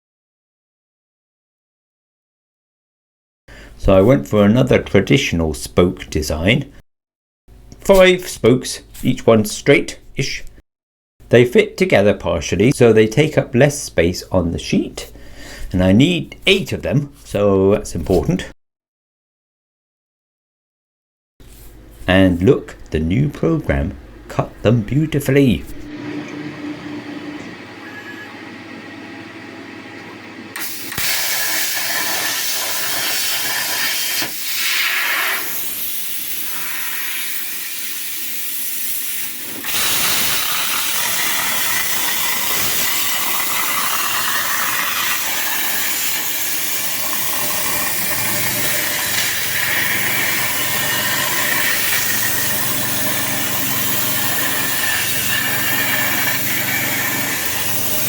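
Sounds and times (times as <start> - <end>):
plasma cutter hissing: 30.6 - 58.0.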